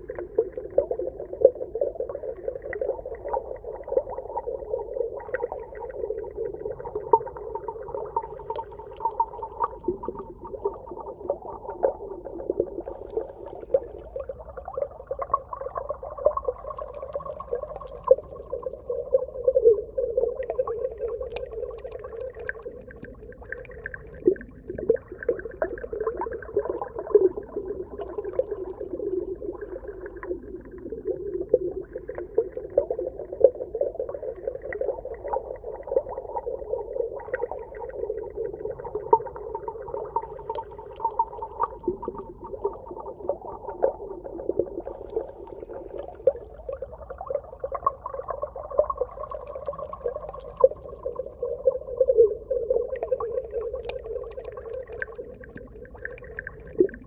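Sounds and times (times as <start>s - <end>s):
muffled underwater drone: 0.0s - 57.0s
small clicks and pops: 21.2s - 23.2s, 53.7s - 57.0s.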